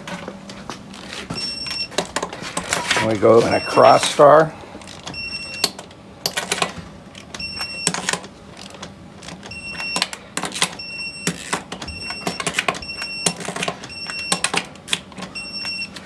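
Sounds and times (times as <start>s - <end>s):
short high-pitched beeps: 1.4s - 1.9s.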